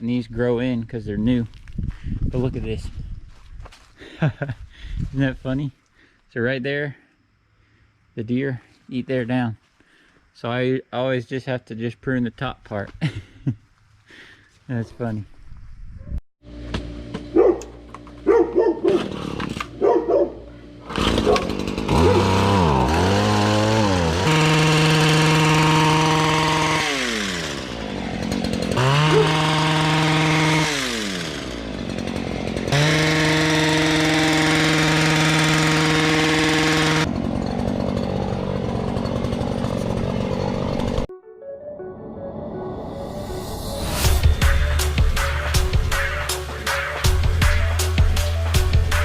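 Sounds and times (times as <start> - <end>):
hedge trimmer engine revving: 18.8 - 19.9, 20.6 - 41.1.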